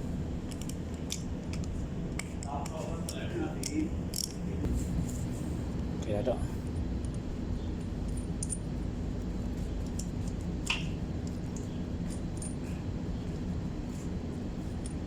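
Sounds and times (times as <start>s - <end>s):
low background rumble: 0.0s - 15.0s
metallic tool clicks: 0.5s - 4.4s.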